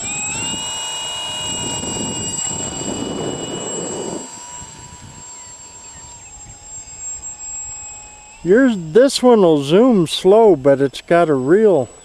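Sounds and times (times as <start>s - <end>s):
wind rushing across microphone: 0.0s - 7.8s
model airplane motor whining: 0.0s - 12.0s.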